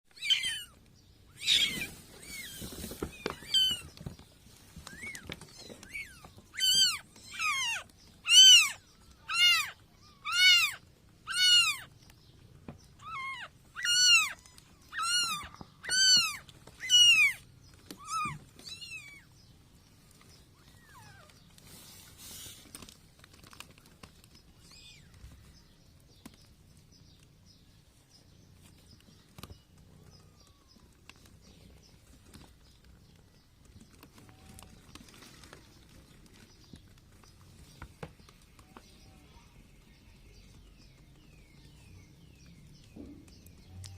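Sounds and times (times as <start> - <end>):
kittens mewing: 0.1 - 4.0, 4.8 - 12.0, 12.9 - 19.3
rustling: 0.1 - 43.9.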